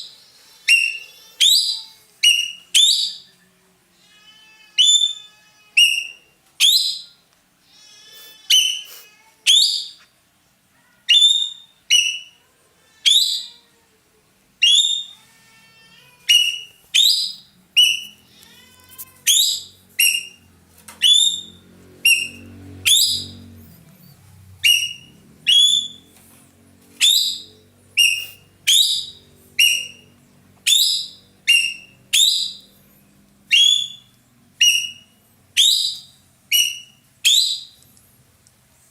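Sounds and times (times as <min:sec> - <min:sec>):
bird whistling sharp notes: 0:24.6 - 0:26.0, 0:27.0 - 0:30.0.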